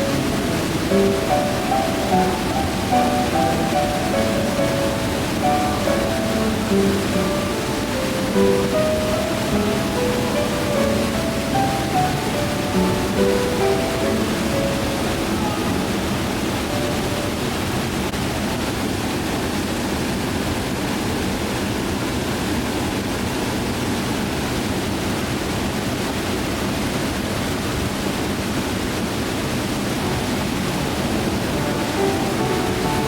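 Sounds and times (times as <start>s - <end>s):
soft music notes: 0.0s - 18.0s, 30.0s - 33.0s
water rushing: 0.0s - 18.7s, 30.0s - 33.0s.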